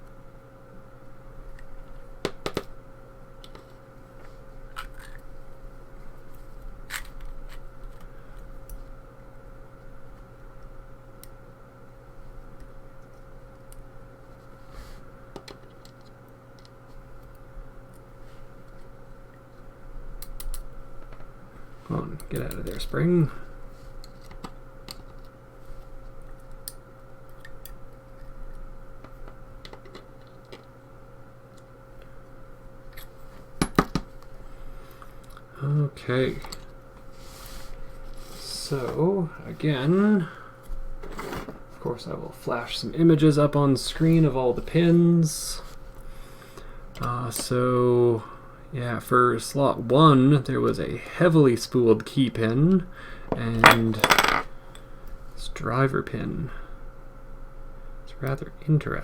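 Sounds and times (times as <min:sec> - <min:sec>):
faint hum: 0:00.0 - 0:59.0.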